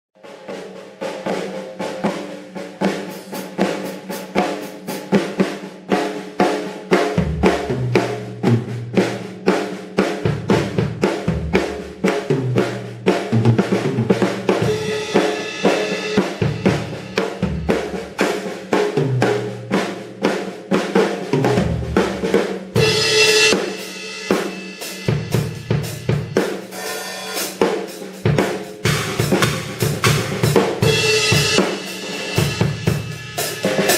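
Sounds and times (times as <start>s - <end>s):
drum kit solo: 0.2s - 33.9s
cymbals ringing: 14.6s - 18.3s, 22.8s - 27.6s, 28.8s - 33.9s.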